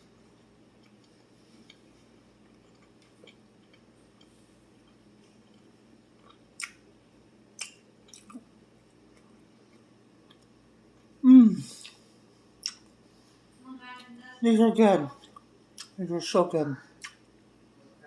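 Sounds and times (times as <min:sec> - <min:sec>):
person chewing: 0:00.6 - 0:06.8, 0:07.5 - 0:12.9, 0:15.2 - 0:16.0, 0:17.0 - 0:17.2.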